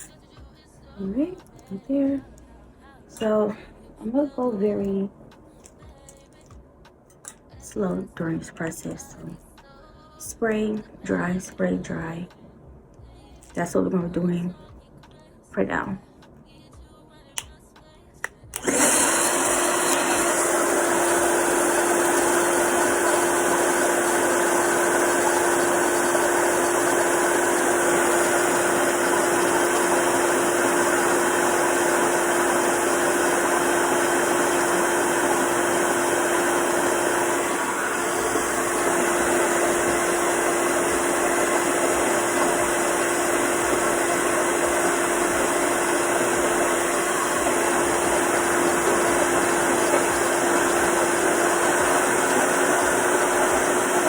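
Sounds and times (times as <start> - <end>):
hair dryer blowing: 18.6 - 54.0.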